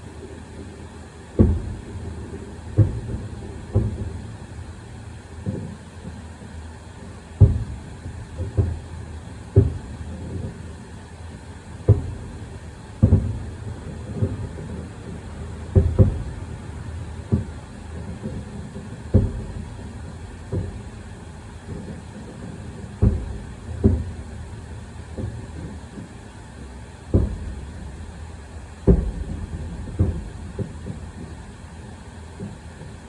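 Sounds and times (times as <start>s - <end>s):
fireworks booming: 0.0s - 33.0s
steady low rumble: 7.4s - 33.0s.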